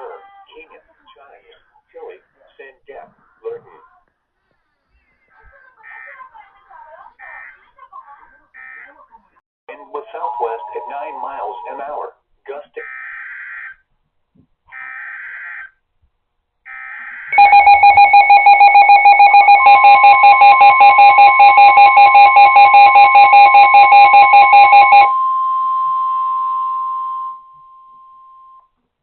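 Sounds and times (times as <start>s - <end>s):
steady warning tone: 9.7s - 12.0s, 17.3s - 28.7s
rapidly pulsing electronic alarm: 16.7s - 27.4s.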